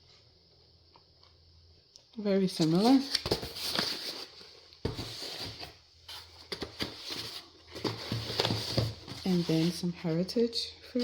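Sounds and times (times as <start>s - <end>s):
egg cartons rustling: 2.6s - 10.1s.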